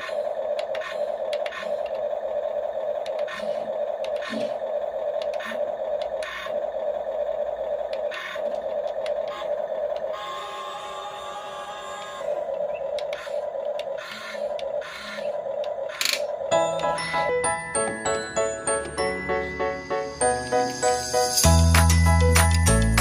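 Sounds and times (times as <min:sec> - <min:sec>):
toy excavator motors whirring: 0:00.0 - 0:17.1.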